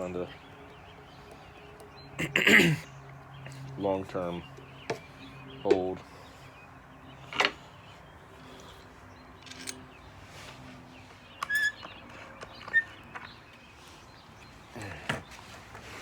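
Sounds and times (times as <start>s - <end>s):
short high squeaks: 11.4s - 11.9s.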